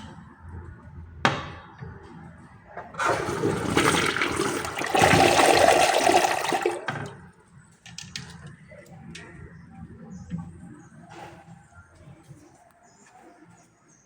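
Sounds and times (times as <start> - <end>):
toilet flushing: 2.8 - 7.3.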